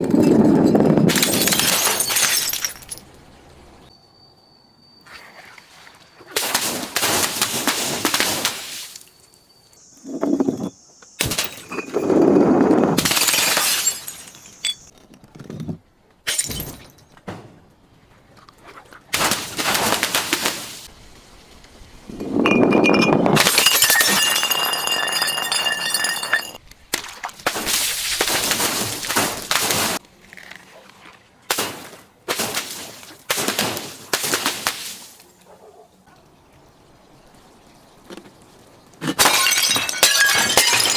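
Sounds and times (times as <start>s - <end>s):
glass bottles breaking and crunching: 0.1s - 3.1s, 11.2s - 12.2s, 13.0s - 14.9s, 16.3s - 17.1s, 22.2s - 26.6s, 39.0s - 40.9s
ringing glass tones: 22.2s - 26.6s.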